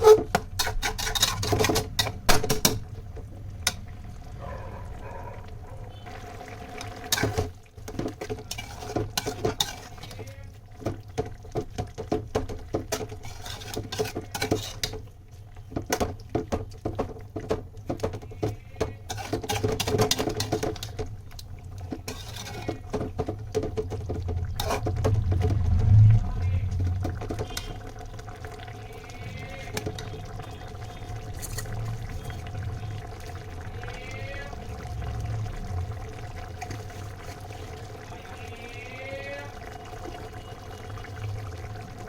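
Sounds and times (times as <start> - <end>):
metal utensils scraping a pot: 0.0 - 3.0, 6.8 - 10.5, 11.9 - 15.1, 18.0 - 25.1, 27.0 - 27.9, 28.5 - 34.6.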